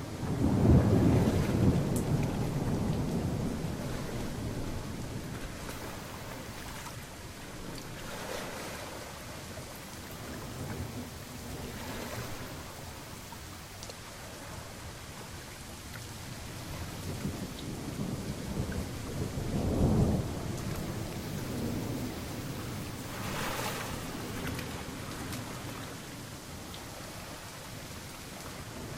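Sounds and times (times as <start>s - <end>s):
rolling thunder: 0.0s - 9.0s, 16.2s - 26.4s
steady rainfall: 0.0s - 28.9s.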